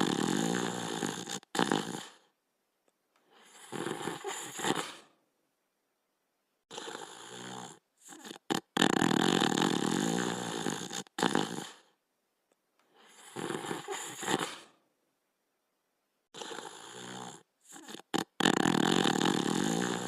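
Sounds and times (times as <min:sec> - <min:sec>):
dog snoring: 0:00.0 - 0:02.3, 0:03.3 - 0:05.1, 0:06.7 - 0:12.0, 0:13.0 - 0:14.8, 0:16.3 - 0:20.0.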